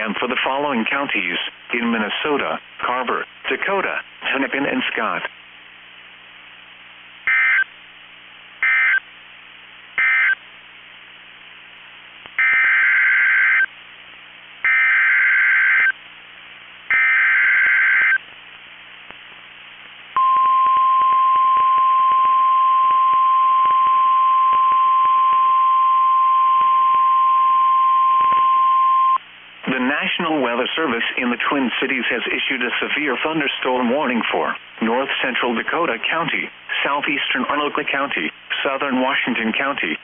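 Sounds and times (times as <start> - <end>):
steady warning alarm tone: 10.0 - 10.4, 12.4 - 13.7, 14.7 - 15.9, 16.9 - 18.2.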